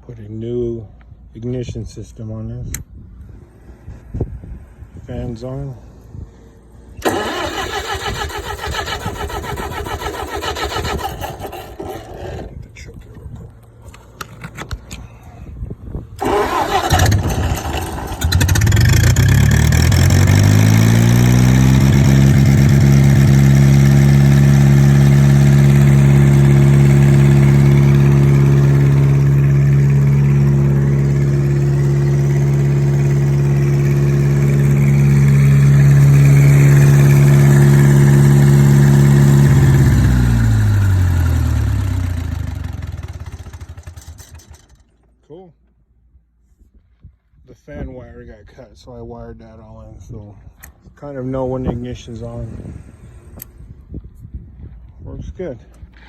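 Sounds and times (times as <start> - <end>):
engine running: 6.7 - 15.0, 16.2 - 45.1
engine cranking and starting: 7.0 - 12.9, 16.2 - 45.1.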